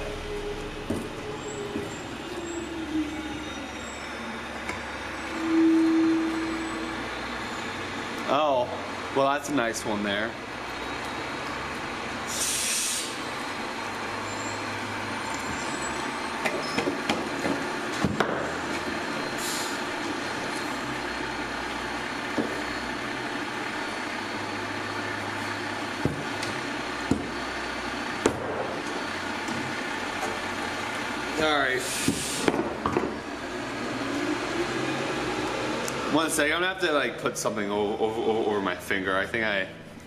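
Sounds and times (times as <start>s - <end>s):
machinery hum: 0.0s - 40.0s
short hisses: 12.3s - 13.2s.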